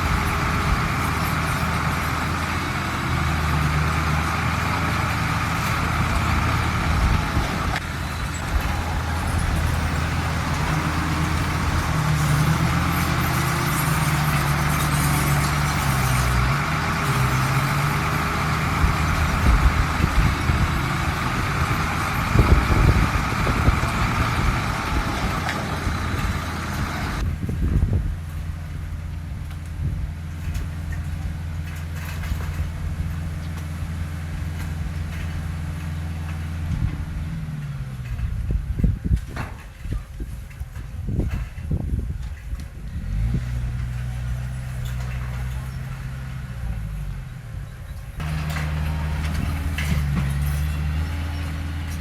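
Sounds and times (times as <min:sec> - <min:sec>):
diesel machinery running: 0:00.0 - 0:52.0
clanks and knocks: 0:48.2 - 0:52.0.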